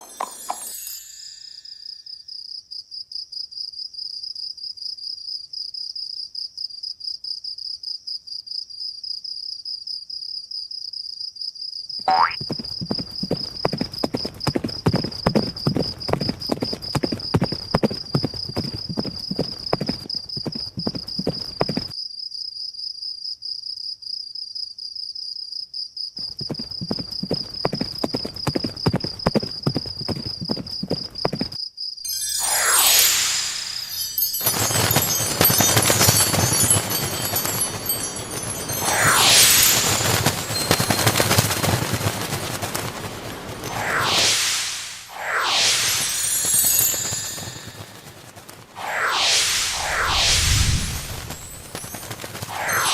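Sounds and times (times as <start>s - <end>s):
cartoon hoofbeats galloping: 12.1s - 21.9s
high-pitched trill: 32.1s - 41.0s, 43.5s - 48.2s, 48.8s - 52.9s
rising whistle: 32.1s - 41.2s, 43.2s - 48.2s, 48.8s - 52.9s.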